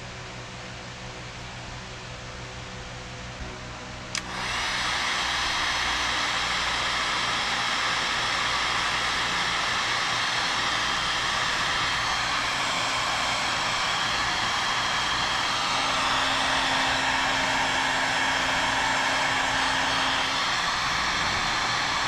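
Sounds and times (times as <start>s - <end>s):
heat gun switch click: 4.1s - 4.5s
heat gun fan hissing: 4.1s - 22.0s.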